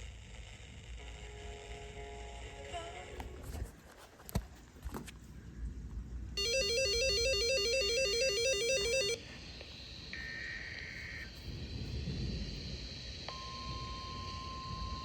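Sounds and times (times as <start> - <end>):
harsh two-tone electronic warble: 6.4 - 9.3
hiss: 9.3 - 15.0.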